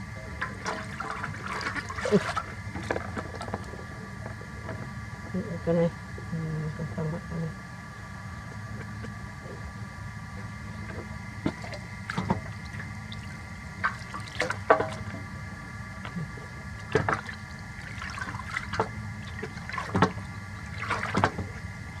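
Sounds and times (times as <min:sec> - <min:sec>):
steady hum: 0:00.0 - 0:22.0
water splashing and dripping: 0:00.4 - 0:03.8, 0:10.9 - 0:15.3, 0:16.8 - 0:21.7.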